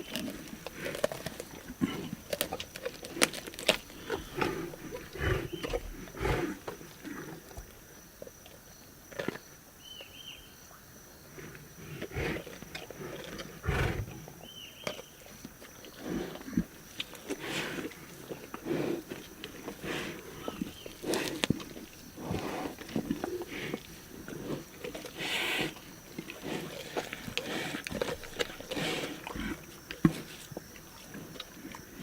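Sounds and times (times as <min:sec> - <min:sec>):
lions crunching and chewing: 0:00.0 - 0:10.3, 0:11.2 - 0:32.0
lions growling: 0:00.1 - 0:07.7, 0:11.3 - 0:14.5, 0:16.0 - 0:30.2.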